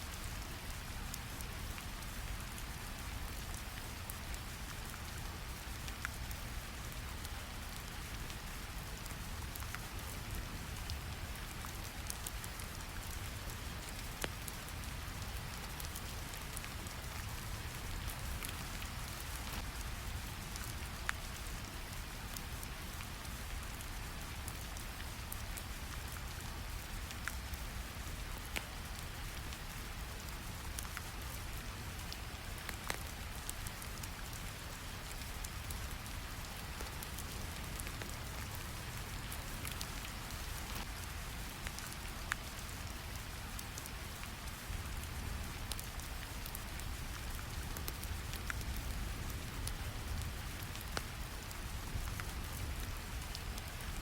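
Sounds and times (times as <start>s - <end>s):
steady rain: 0.0s - 54.0s
fire crackling: 2.8s - 22.6s, 31.8s - 54.0s.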